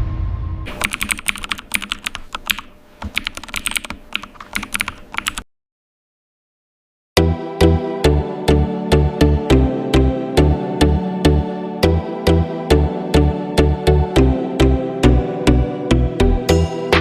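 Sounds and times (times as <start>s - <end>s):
keyboard typing clicks: 0.7s - 5.4s
electronic music with steady beat: 7.2s - 17.0s.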